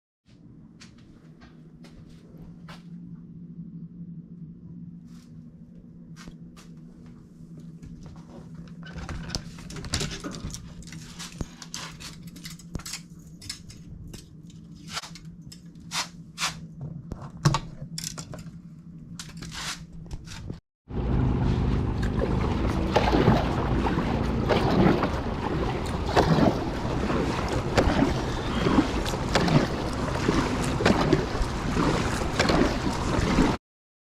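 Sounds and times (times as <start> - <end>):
steady low hum: 0.3 - 33.6
clicks and clatters of handling: 8.8 - 16.0, 17.1 - 18.6.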